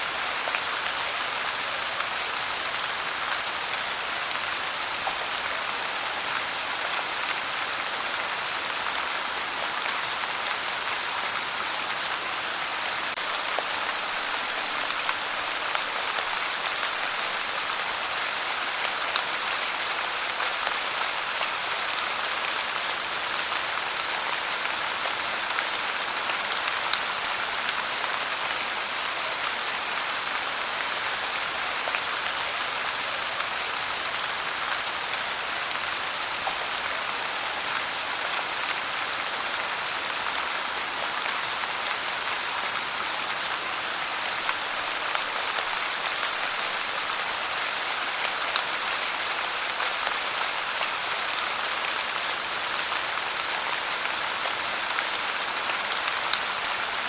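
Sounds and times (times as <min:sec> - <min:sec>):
rain pattering on a surface: 0:00.0 - 0:57.0.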